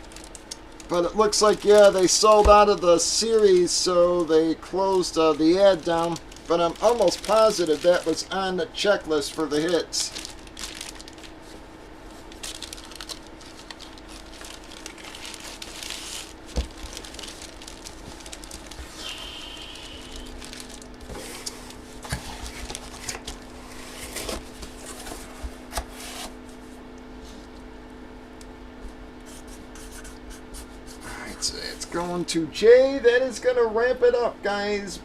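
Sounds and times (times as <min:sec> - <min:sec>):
plastic packaging crinkling: 0:00.0 - 0:26.2.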